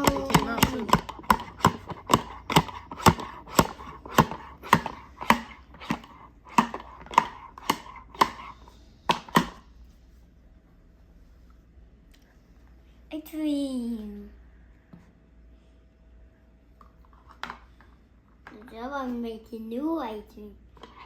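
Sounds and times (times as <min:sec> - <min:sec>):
toy tool chopping dough: 0:00.0 - 0:09.7.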